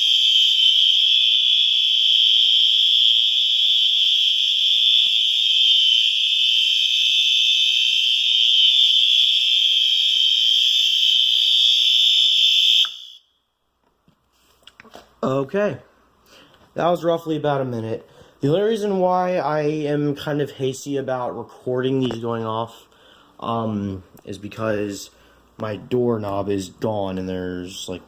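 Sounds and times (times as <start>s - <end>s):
fire alarm tone: 0.0s - 13.5s.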